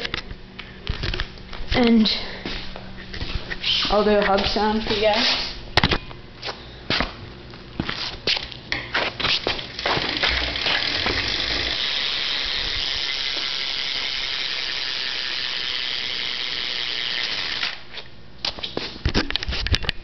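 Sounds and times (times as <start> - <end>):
bike hub freewheeling buzz: 7.8 - 18.1.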